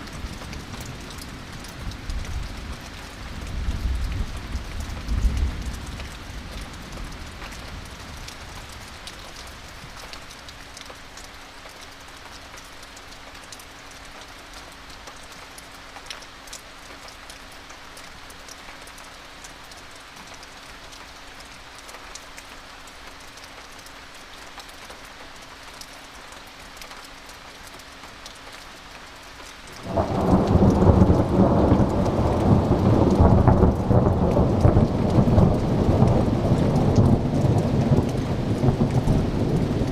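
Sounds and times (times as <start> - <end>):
steady rain falling: 0.0 - 39.9
thunder rumbling: 29.8 - 39.9.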